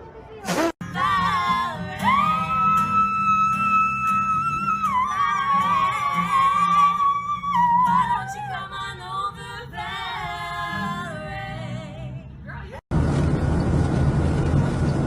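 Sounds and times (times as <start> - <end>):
high-pitched singing voice: 0.8 - 12.2.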